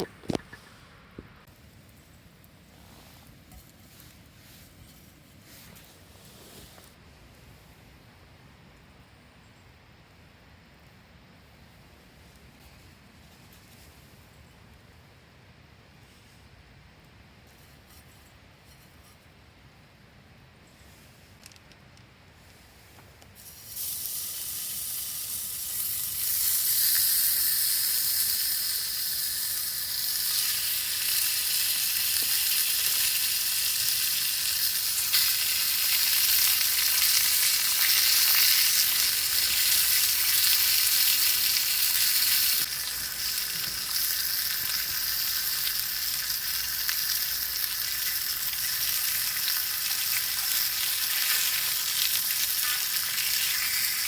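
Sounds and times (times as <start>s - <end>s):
meat sizzling in a frying pan: 23.4s - 54.0s.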